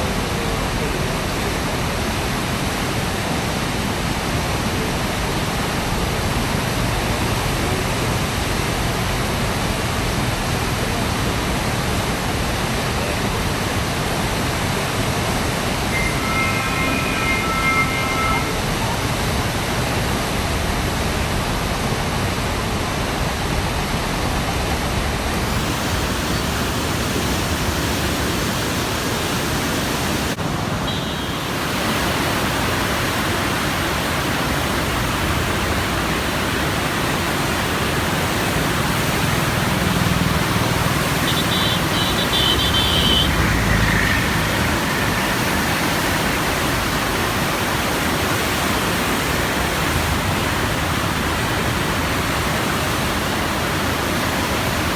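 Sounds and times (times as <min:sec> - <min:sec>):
floodwater rushing through gates: 0:25.4 - 0:54.9.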